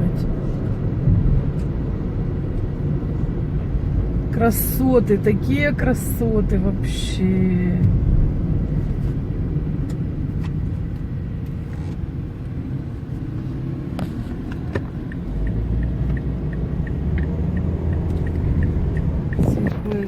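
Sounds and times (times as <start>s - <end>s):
car road and engine rumble: 0.0s - 20.0s
turn indicator ticking: 9.4s - 20.0s.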